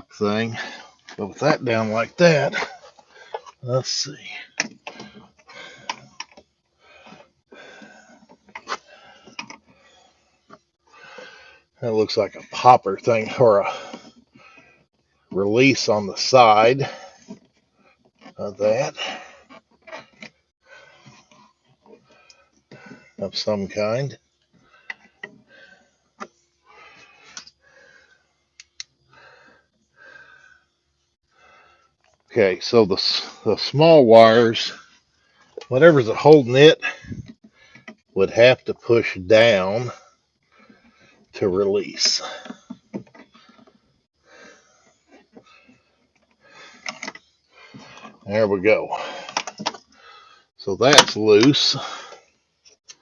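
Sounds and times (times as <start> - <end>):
rustling of wiring: 0.0 - 30.3.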